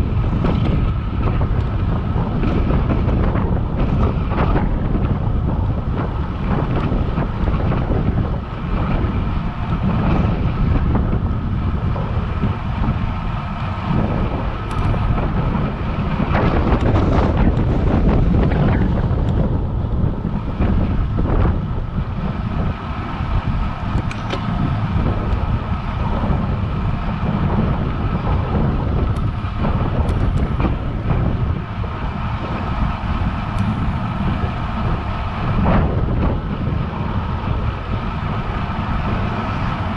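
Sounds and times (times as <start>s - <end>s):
wind buffeting microphone: 0.0s - 39.9s.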